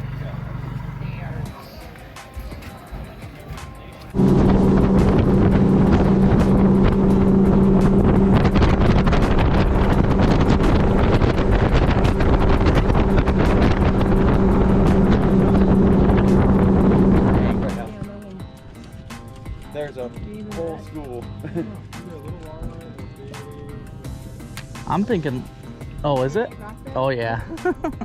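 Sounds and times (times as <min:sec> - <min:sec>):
outboard motor running: 0:04.2 - 0:18.2
wind buffeting microphone: 0:04.2 - 0:18.2.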